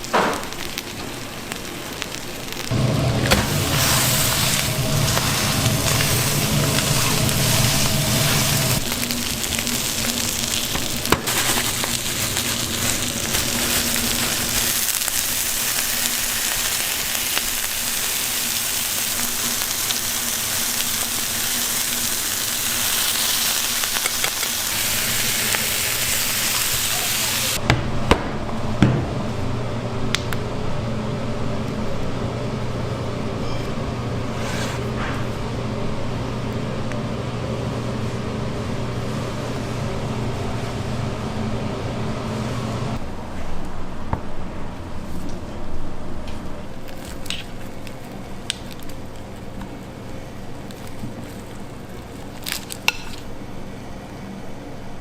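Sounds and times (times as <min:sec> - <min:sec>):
food sizzling: 0:00.0 - 0:27.6
low hum: 0:02.6 - 0:16.2.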